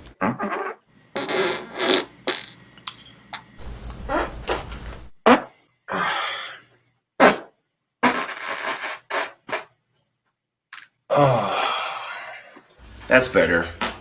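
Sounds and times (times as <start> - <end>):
farts: 0.1 - 2.6, 4.0 - 5.6, 7.2 - 9.7.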